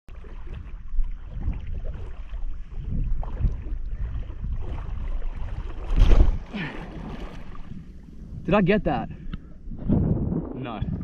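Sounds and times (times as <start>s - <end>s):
wind buffeting microphone: 0.1s - 11.0s.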